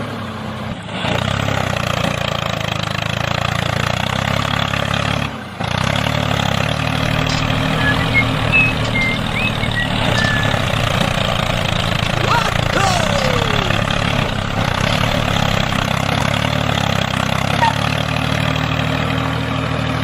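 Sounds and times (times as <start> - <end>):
engine idling: 1.1 - 20.0
short chirps: 7.4 - 11.2.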